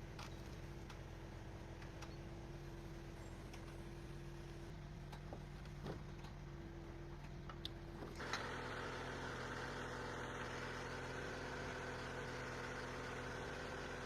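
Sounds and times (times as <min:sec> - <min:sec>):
atv engine running: 0:08.2 - 0:14.0.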